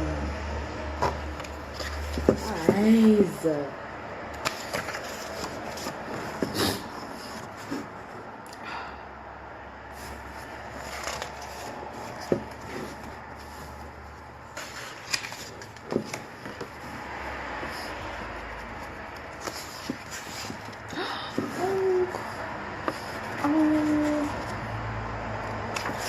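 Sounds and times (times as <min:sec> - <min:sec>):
packaging rustling: 0:04.4 - 0:08.0, 0:09.9 - 0:17.0.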